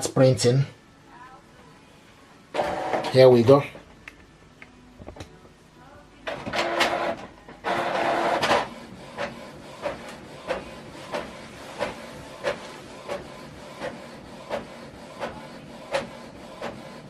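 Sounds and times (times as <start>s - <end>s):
printer feed mechanism whirring: 2.6s - 3.2s, 6.3s - 17.0s
print head shuttling strokes: 7.7s - 17.0s.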